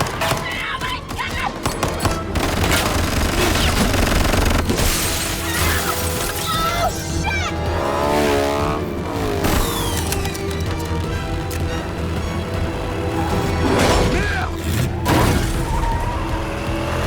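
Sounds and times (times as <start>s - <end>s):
gunfire: 0.0s - 6.1s
action film music: 0.0s - 17.0s.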